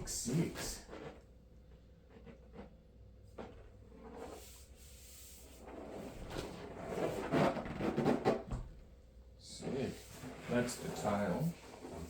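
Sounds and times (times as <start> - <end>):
surfboard rubbing and scuffing: 9.5 - 12.0.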